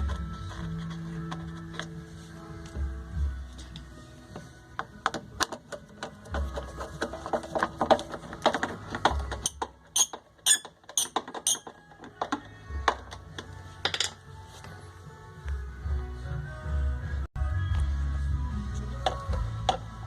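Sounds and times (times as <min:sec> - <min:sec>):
music with deep pulse: 0:14.6 - 0:20.0.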